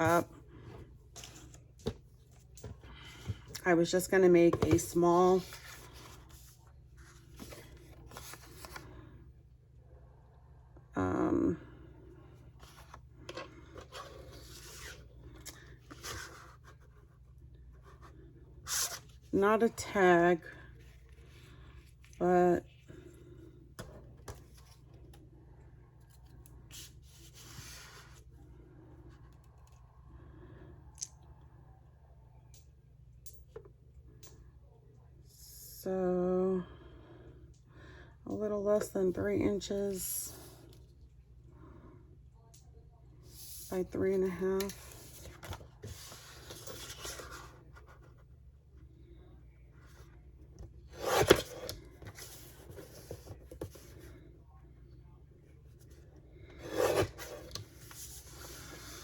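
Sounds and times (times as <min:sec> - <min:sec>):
paper rustling and scraping: 0:04.7 - 0:08.9.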